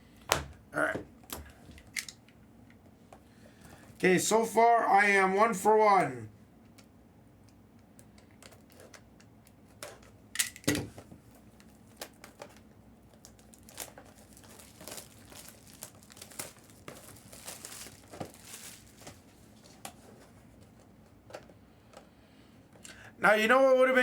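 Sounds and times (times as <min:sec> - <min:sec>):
plastic packaging crinkling and tearing: 0:11.2 - 0:20.2.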